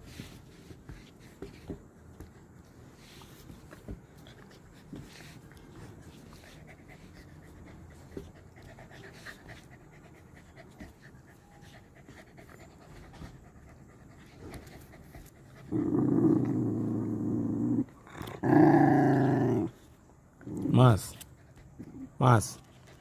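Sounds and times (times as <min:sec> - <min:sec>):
dogs panting: 0:03.5 - 0:15.8.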